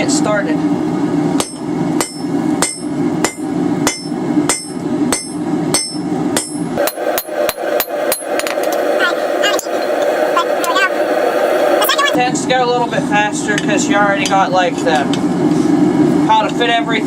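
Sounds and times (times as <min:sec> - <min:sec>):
hammer striking steel on anvil: 0:01.4 - 0:08.6
steady low rumble: 0:06.8 - 0:12.2.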